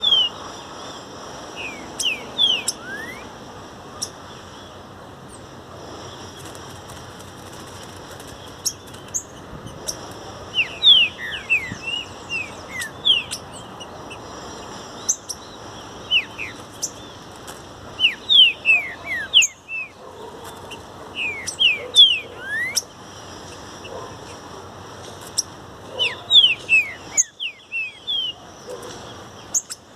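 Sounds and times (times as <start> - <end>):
bird singing whistled notes: 0.0 - 1.0, 1.6 - 3.3, 8.6 - 17.2, 18.0 - 20.0, 20.6 - 23.0, 25.4 - 28.8.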